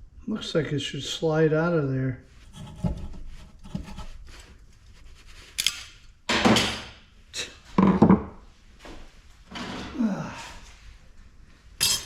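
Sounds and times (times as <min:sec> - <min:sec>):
metal scraping and knocking: 0:02.4 - 0:04.4, 0:11.8 - 0:12.0.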